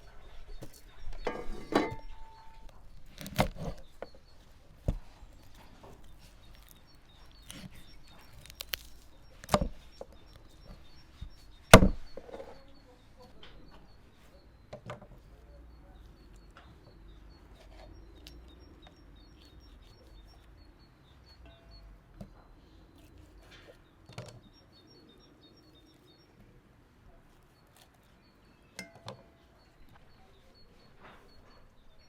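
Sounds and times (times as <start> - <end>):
small birds chirping faintly: 0.0 - 32.0
chopping on wood: 11.7 - 12.3.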